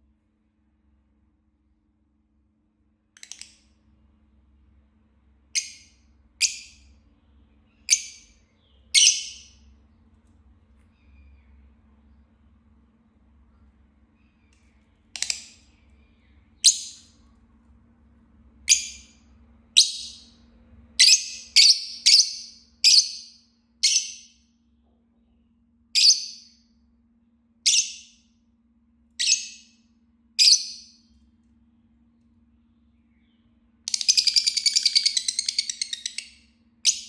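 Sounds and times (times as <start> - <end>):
lovebird shrill calls: 33.9 - 37.0.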